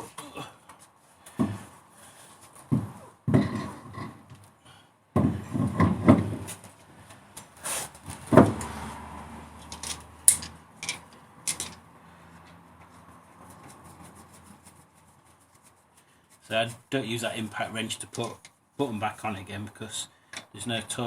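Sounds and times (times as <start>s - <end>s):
car wheel clunks and knocks: 2.6s - 4.4s, 5.2s - 6.5s, 8.1s - 8.7s
heavy thuds: 2.6s - 4.4s, 5.2s - 6.5s.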